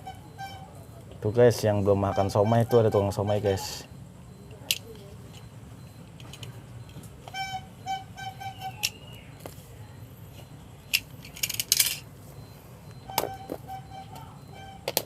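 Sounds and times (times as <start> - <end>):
vendor's high-pitched signal tones: 0.0 - 11.3, 12.3 - 14.9
sharp clicks and rustling: 4.5 - 7.4, 10.4 - 12.1.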